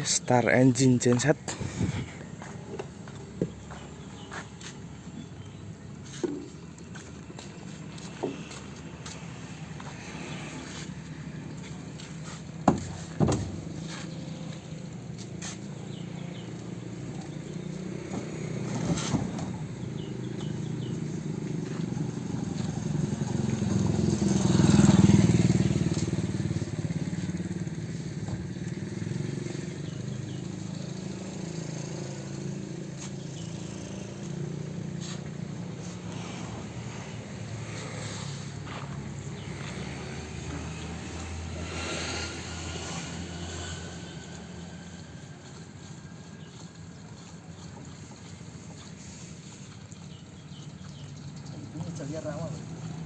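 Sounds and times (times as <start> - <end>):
diesel generator running: 0.0 - 41.2.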